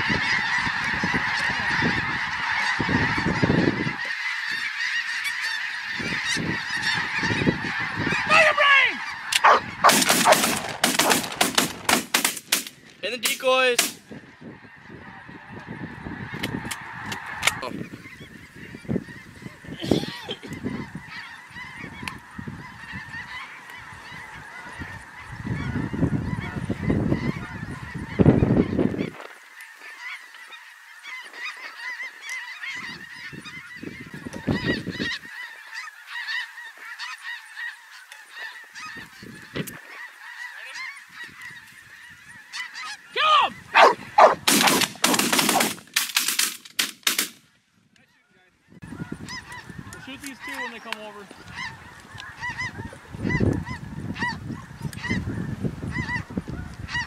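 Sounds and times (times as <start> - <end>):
wind buffeting microphone: 0.0 - 4.0, 5.9 - 8.5, 9.1 - 12.1, 13.8 - 29.3, 32.8 - 35.4, 43.5 - 45.7, 48.7 - 50.3, 51.2 - 57.0
geese honking: 0.0 - 46.3, 48.0 - 57.0.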